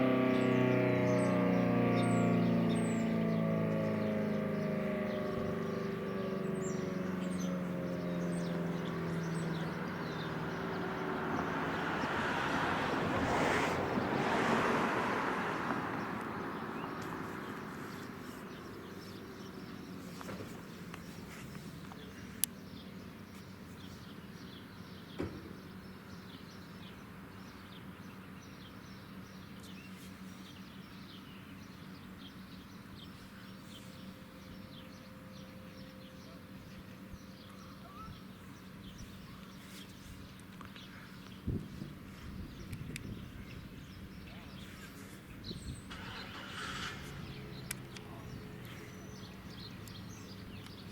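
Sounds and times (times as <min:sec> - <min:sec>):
siren: 0:00.0 - 0:10.9, 0:34.1 - 0:38.2
small birds chirping: 0:00.3 - 0:12.6, 0:15.8 - 0:50.9
sharp clicks: 0:47.6 - 0:48.1.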